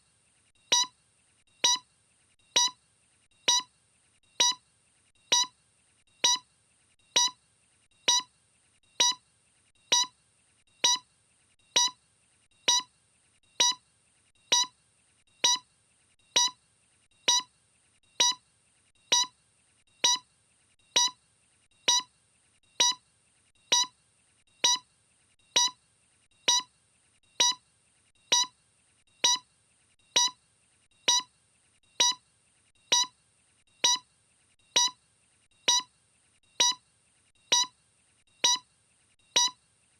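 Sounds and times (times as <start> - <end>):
short electronic beeps: 0.7 - 0.9, 1.6 - 1.8, 2.6 - 2.8, 3.5 - 3.7, 4.4 - 4.6, 5.3 - 5.5, 6.2 - 6.4, 7.2 - 7.4, 8.1 - 8.3, 9.0 - 9.2, 9.9 - 10.1, 10.8 - 11.0, 11.8 - 12.0, 12.7 - 12.9, 13.6 - 13.8, 14.5 - 14.7, 15.4 - 15.6, 16.4 - 16.6, 17.3 - 17.5, 18.2 - 18.4, 19.1 - 19.3, 20.0 - 20.2, 21.0 - 21.2, 21.9 - 22.1, 22.8 - 23.0, 23.7 - 23.9, 24.6 - 24.8, 25.6 - 25.8, 26.5 - 26.7, 27.4 - 27.6, 28.3 - 28.5, 29.2 - 29.4, 30.2 - 30.4, 31.1 - 31.3, 32.0 - 32.2, 32.9 - 33.1, 33.8 - 34.0, 34.8 - 35.0, 35.7 - 35.9, 36.6 - 36.8, 37.5 - 37.7, 38.4 - 38.6, 39.4 - 39.6.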